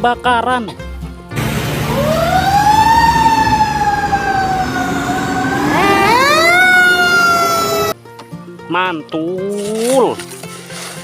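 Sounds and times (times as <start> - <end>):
fire engine siren wailing: 1.4 - 8.0.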